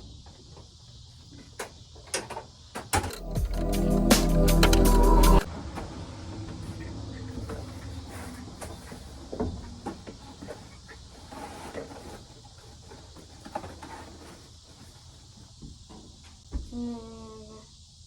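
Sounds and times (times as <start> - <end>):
loud music-like sound: 3.2 - 5.5.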